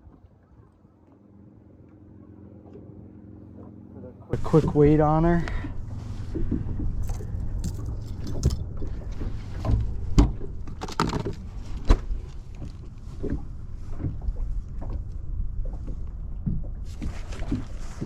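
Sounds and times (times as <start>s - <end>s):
steady low rumble: 4.3s - 17.8s
metallic clinks and knocks: 7.0s - 8.7s.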